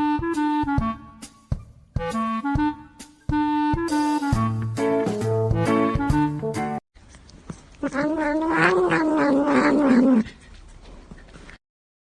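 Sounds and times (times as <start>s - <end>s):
bouncy melody over a beat: 0.0s - 6.8s.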